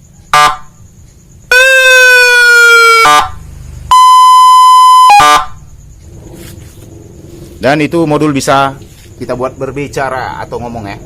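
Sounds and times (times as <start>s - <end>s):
electronic horn tones: 2.9s - 5.6s.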